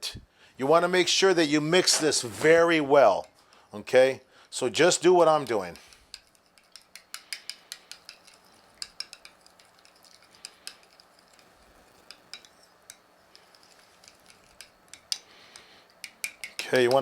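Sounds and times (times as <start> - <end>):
utensil clinking against bowl: 5.4 - 17.0.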